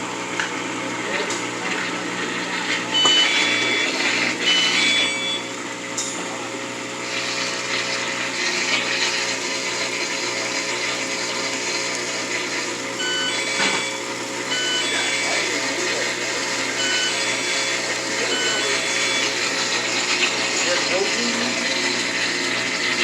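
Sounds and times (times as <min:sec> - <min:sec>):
laundry machine motor hum: 0:00.0 - 0:23.0
short electronic beeps: 0:03.0 - 0:05.5, 0:13.0 - 0:15.5, 0:16.7 - 0:19.4.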